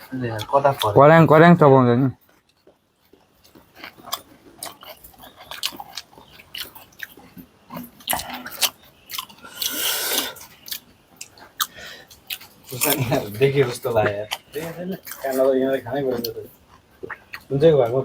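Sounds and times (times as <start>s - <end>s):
crisp shells being chewed: 2.2s - 17.5s
breathy hiss: 9.4s - 10.5s, 11.6s - 12.2s.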